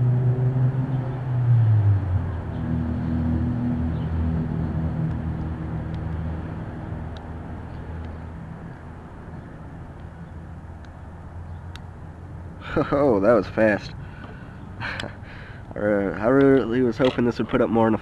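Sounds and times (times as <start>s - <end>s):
low rumble with hum: 0.0s - 16.8s.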